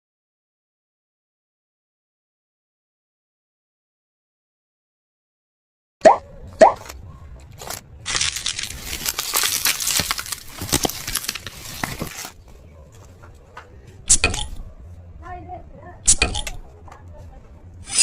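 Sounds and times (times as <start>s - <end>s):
packaging tearing and crinkling: 6.8s - 12.4s.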